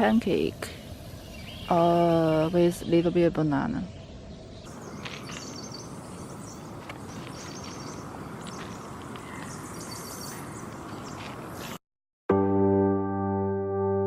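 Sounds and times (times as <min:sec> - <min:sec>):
bird chirping: 0:00.7 - 0:11.8.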